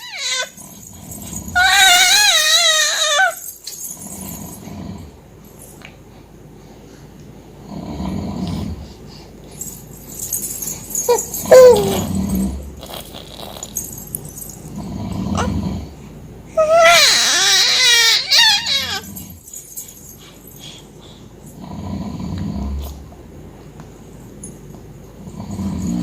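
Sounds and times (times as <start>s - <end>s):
baby squealing: 0.0s - 0.6s, 1.6s - 3.4s, 11.1s - 12.1s, 16.6s - 19.1s
baby grunting: 11.1s - 12.2s.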